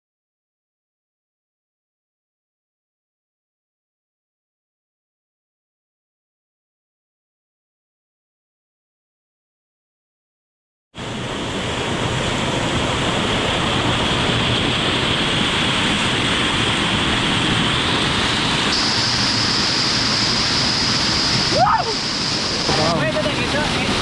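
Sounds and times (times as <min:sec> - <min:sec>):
waterfall roaring: 0:11.0 - 0:24.0.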